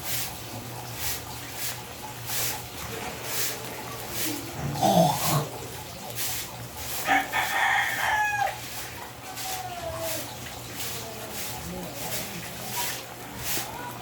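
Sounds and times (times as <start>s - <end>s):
rooster crowing: 7.0s - 8.7s.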